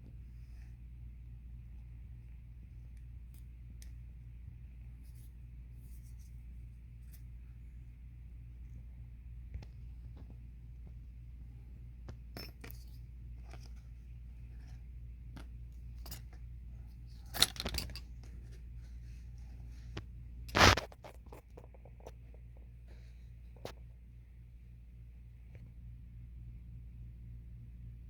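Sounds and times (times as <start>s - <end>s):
steady low hum: 0.0s - 28.0s
small metallic clicks and clinks: 15.4s - 16.5s, 17.1s - 18.4s.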